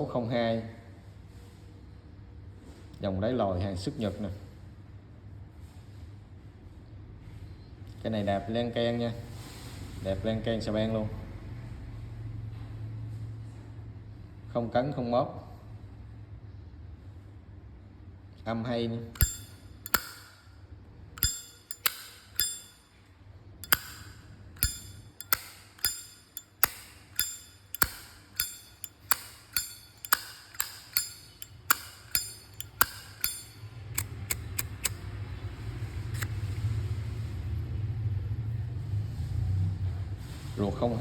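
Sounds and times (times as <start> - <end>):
lighter lid clicking: 19.2 - 20.3, 21.2 - 22.8, 23.6 - 35.0.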